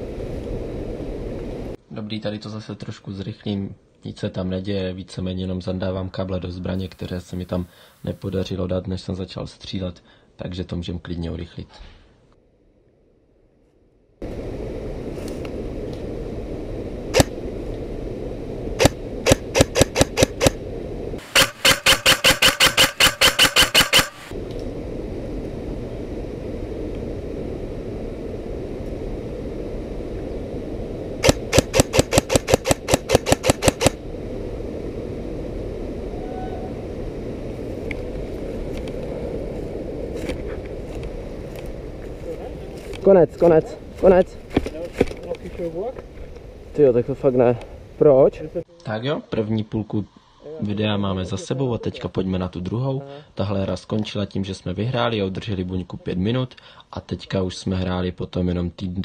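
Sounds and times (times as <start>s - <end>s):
background rushing noise: 0.0s - 2.0s, 14.2s - 55.3s
airsoft rifle firing: 17.1s - 17.4s, 18.8s - 20.6s, 21.2s - 24.3s, 31.2s - 34.0s.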